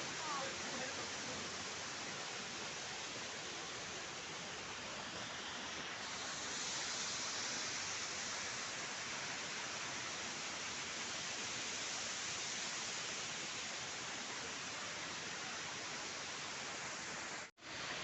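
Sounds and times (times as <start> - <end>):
rushing falling water: 0.0 - 18.0.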